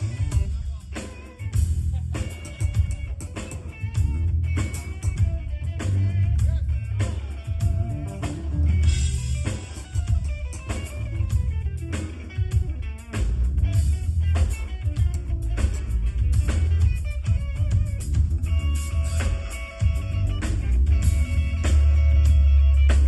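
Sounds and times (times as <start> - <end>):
drum kit beat: 0.0 - 23.0
guitar: 0.0 - 23.0
heavy bass: 0.0 - 23.0.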